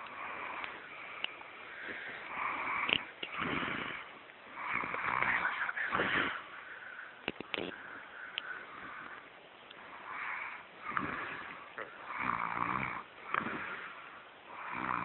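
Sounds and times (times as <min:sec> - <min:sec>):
person snoring: 0:02.3 - 0:06.5, 0:10.0 - 0:15.0.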